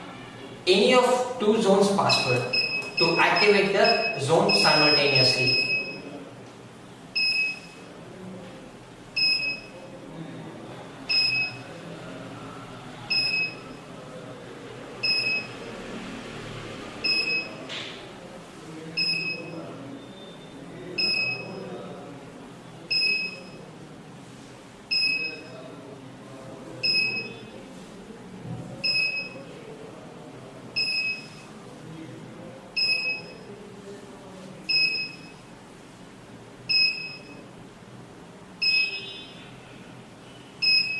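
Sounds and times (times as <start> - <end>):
alarm panel buzzer beeping: 38.6 - 39.4, 40.6 - 40.9.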